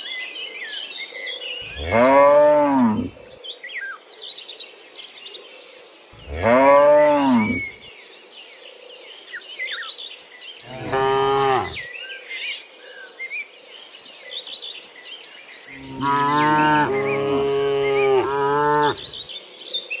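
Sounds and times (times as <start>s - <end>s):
cattle mooing: 10.7s - 11.8s, 15.8s - 19.1s.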